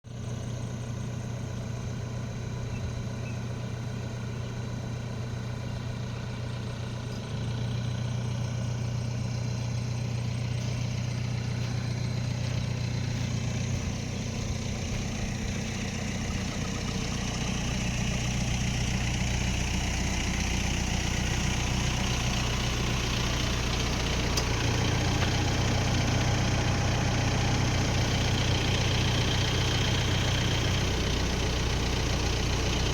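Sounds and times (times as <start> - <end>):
vehicle engine humming: 0.1 - 32.9.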